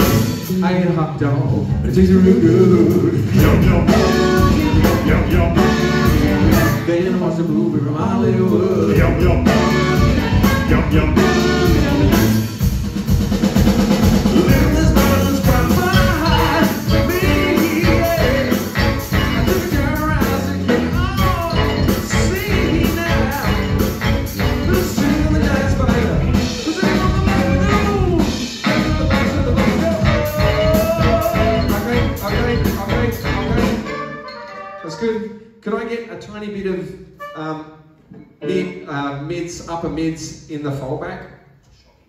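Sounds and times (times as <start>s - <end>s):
live rock band playing: 0.0s - 7.0s, 8.5s - 35.1s.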